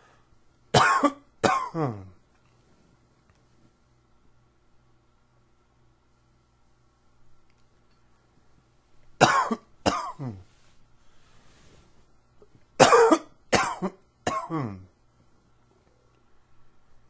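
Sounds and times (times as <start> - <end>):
man coughing: 0.8 - 2.2, 9.2 - 10.5, 12.8 - 14.9.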